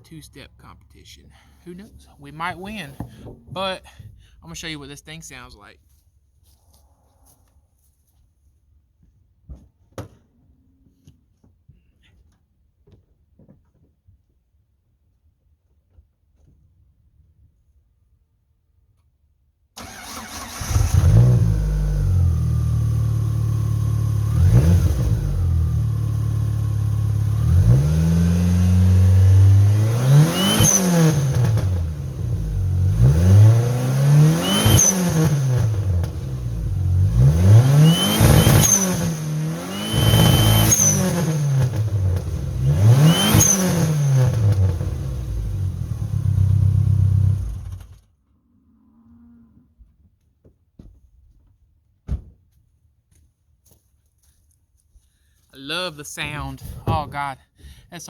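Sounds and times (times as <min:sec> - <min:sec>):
car engine idling and revving: 0:19.8 - 0:48.1.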